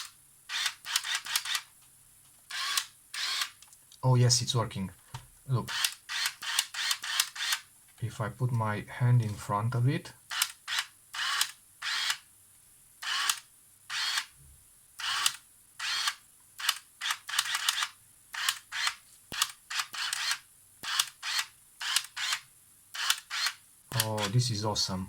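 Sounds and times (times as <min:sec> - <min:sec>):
camera autofocus chirping whirs: 0:00.0 - 0:01.7, 0:02.5 - 0:03.6, 0:05.7 - 0:07.7, 0:10.3 - 0:12.2, 0:13.0 - 0:14.3, 0:15.0 - 0:24.4.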